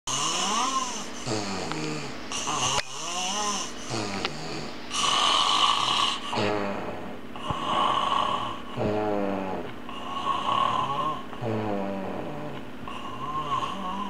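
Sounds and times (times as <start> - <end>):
man snoring loudly: 0.1 - 14.0.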